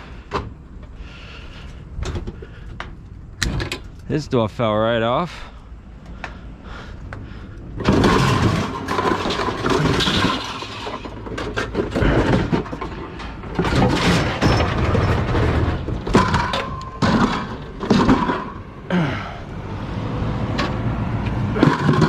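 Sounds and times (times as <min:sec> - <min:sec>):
scrap metal clattering: 0:07.8 - 0:18.8, 0:21.6 - 0:22.0.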